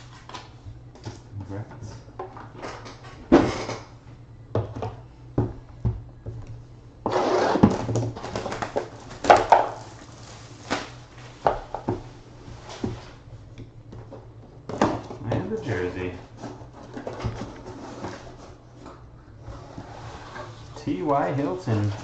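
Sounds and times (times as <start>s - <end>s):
packaging rustling and tearing: 7.1s - 11.1s.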